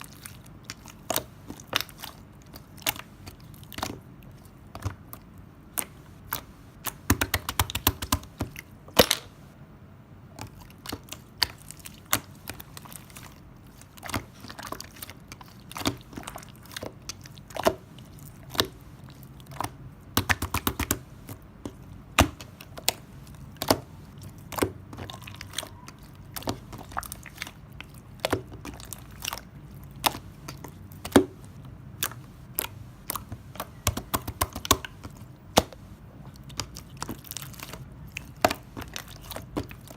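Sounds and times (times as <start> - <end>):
slime clicking and popping: 5.7 - 9.3, 19.4 - 21.0, 21.6 - 39.9.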